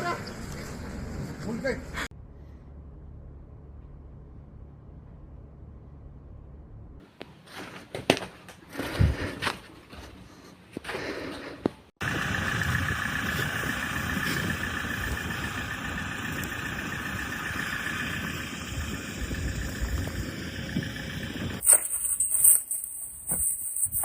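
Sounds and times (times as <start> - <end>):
engine whine and rumble: 0.4 - 7.4, 11.9 - 21.6.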